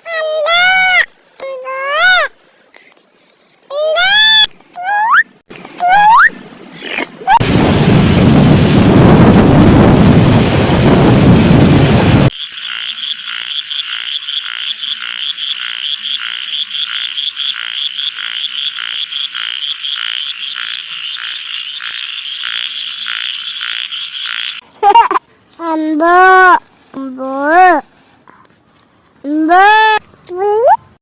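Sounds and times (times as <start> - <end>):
loud rushing noise: 7.4 - 12.3
frogs croaking: 12.3 - 24.7.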